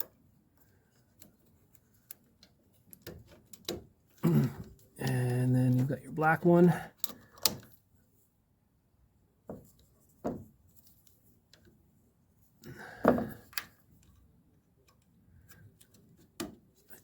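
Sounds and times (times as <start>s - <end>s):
connector clicks and rubbing: 0.0s - 5.9s.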